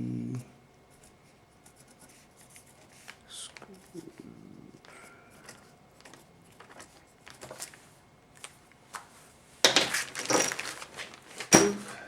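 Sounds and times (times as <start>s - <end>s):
metal parts clattering: 9.7s - 12.0s.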